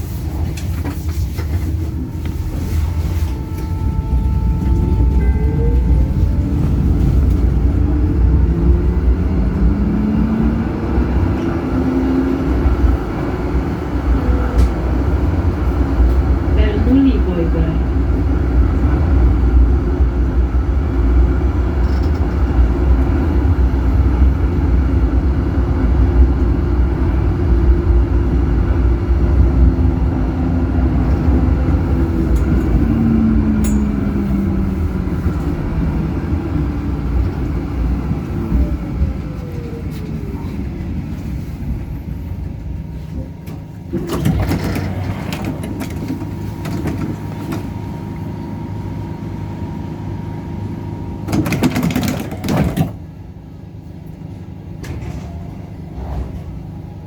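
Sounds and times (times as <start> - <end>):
tram wheels rumbling on rails: 0.0 - 57.0
steady tone: 14.0 - 17.8.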